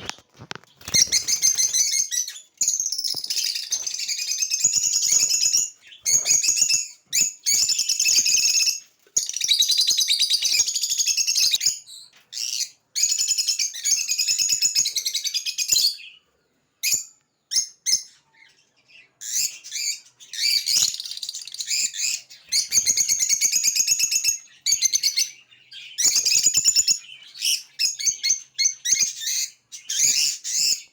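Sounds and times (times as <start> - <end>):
lovebirds chirping: 0.0 - 30.9.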